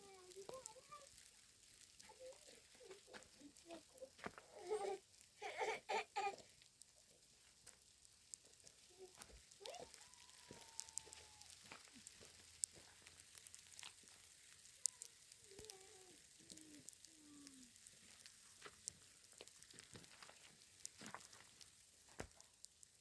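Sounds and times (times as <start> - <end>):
crackling and sizzling: 0.0 - 23.0
sharp pops: 6.4 - 23.0.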